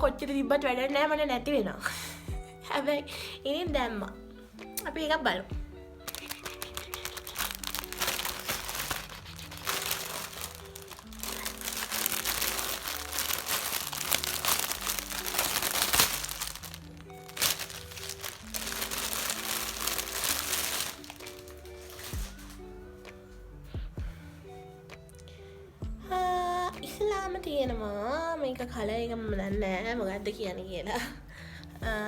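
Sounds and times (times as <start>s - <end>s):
background music: 0.0s - 32.0s
packaging crinkling: 6.0s - 22.6s.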